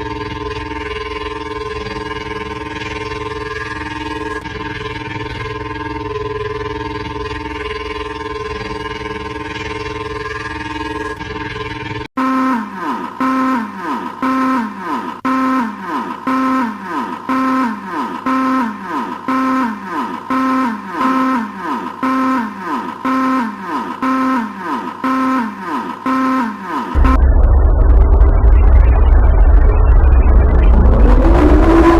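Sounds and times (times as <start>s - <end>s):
siren with falling pitch pattern: 0.0s - 31.9s
loud low rumble: 27.0s - 31.9s.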